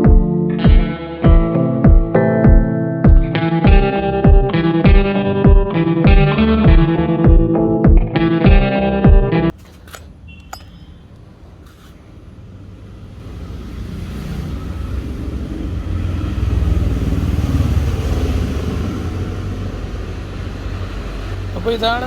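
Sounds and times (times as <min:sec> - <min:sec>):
vehicle engine rumble: 0:09.5 - 0:22.0.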